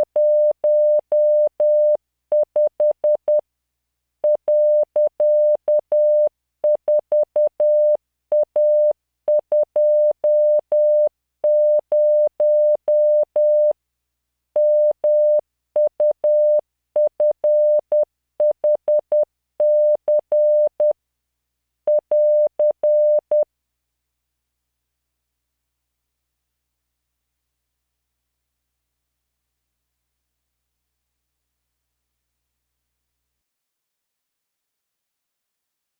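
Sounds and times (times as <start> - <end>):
morse code beeps: 21.9 - 23.4.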